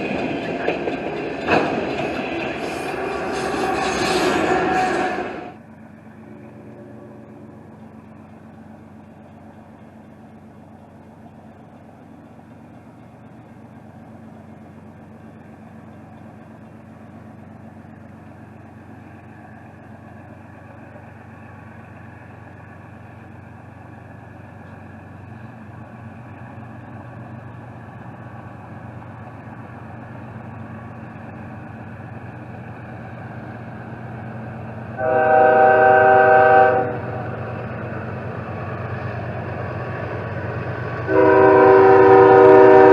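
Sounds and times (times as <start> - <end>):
diesel locomotive engine drone: 0.0 - 42.9
locomotive air horn blast: 35.0 - 37.2, 41.1 - 42.9.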